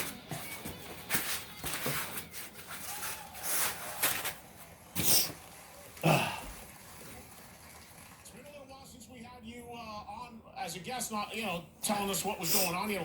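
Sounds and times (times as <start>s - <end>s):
packaging rustling and scraping: 0.0s - 5.4s.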